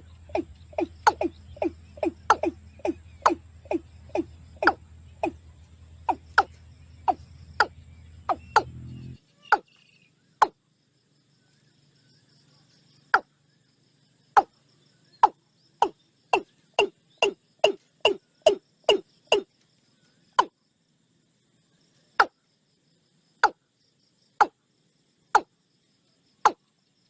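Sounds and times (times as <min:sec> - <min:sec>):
animal short gliding calls: 0:00.0 - 0:08.8, 0:15.2 - 0:19.5
low steady hum: 0:00.0 - 0:27.0.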